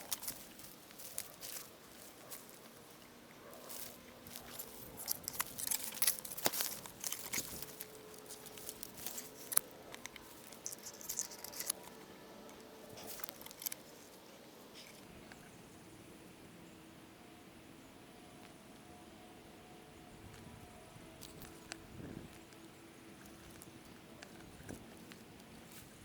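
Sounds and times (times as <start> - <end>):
footsteps rustling and crunching: 0.0 - 15.1, 21.2 - 26.0.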